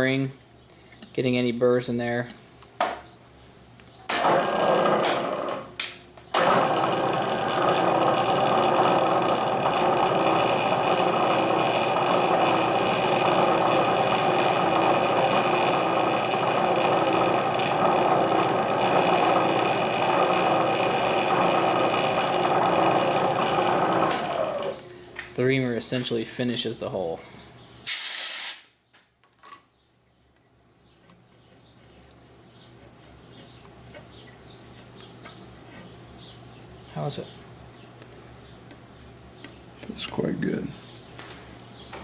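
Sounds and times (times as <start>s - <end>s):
electric drill running: 6.4s - 24.8s.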